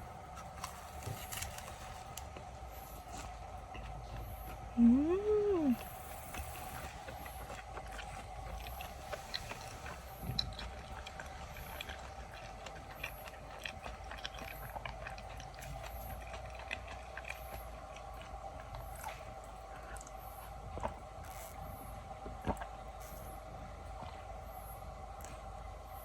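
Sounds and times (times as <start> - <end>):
faint steady hum: 0.0 - 26.0
food being chewed: 0.0 - 26.0
person humming: 4.8 - 5.8.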